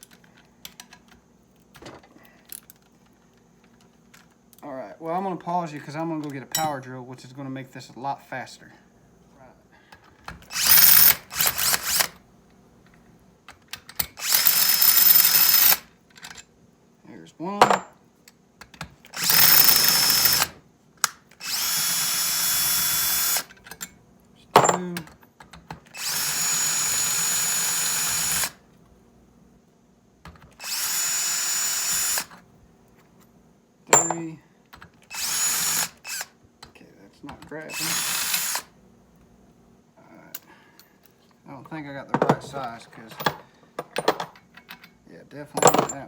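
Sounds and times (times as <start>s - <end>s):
power drill running: 10.5s - 12.1s, 14.2s - 15.9s, 19.1s - 20.6s, 21.4s - 23.5s, 25.9s - 28.6s, 30.6s - 32.4s, 35.1s - 36.3s, 37.7s - 38.7s.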